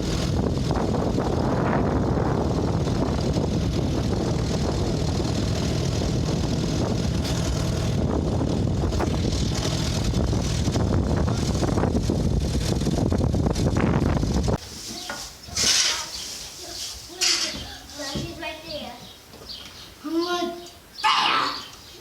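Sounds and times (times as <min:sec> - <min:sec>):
vehicle engine running: 0:00.0 - 0:14.6.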